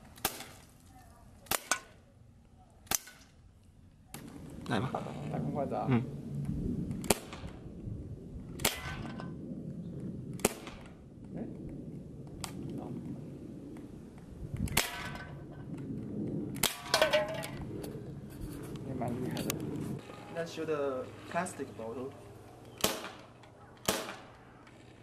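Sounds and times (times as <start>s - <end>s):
air pistol shots: 8.6s - 9.1s, 10.3s - 11.0s, 22.8s - 24.4s.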